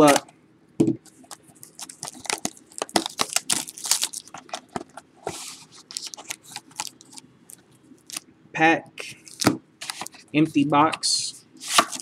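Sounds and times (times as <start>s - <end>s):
wrapping crackling and tearing: 1.1s - 8.2s, 11.6s - 12.0s.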